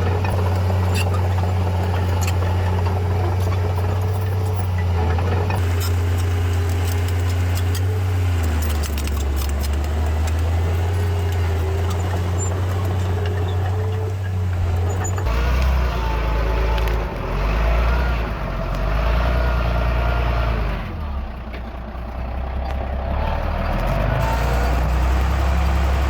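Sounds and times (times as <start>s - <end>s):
bulldozer diesel engine drone: 0.0s - 26.0s
metallic clinks and rattles: 5.6s - 14.3s.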